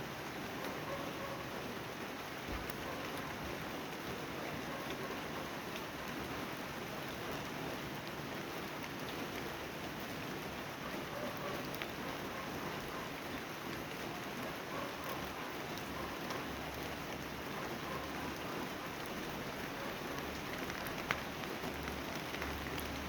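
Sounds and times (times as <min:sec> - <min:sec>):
steady rain: 0:00.0 - 0:23.0
raindrop ticks: 0:19.8 - 0:23.0.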